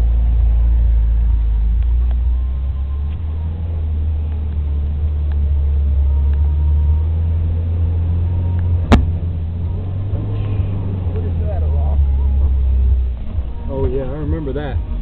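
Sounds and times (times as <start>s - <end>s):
engine deep rumble: 0.0s - 15.0s
sharp knock: 8.8s - 9.3s.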